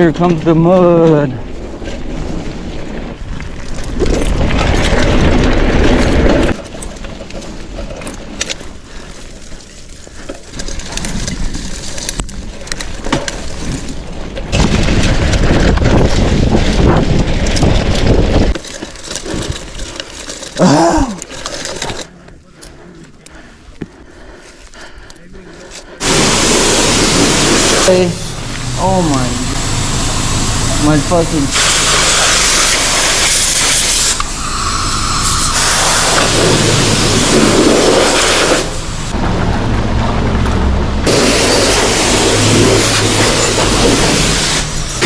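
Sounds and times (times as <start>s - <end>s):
bike tyre and drivetrain noise: 0.0s - 45.0s
wind on microphone: 14.5s - 18.6s.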